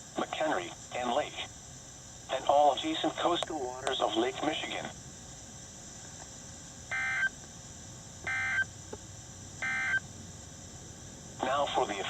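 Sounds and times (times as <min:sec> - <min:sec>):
multi-tone beeps: 0:09.6 - 0:10.0.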